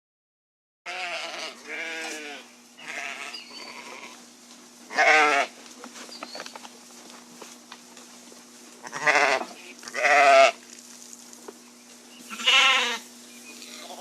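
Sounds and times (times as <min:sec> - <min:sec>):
sheep bleating: 0:00.9 - 0:04.2, 0:04.9 - 0:05.6, 0:08.8 - 0:10.6, 0:12.3 - 0:14.0.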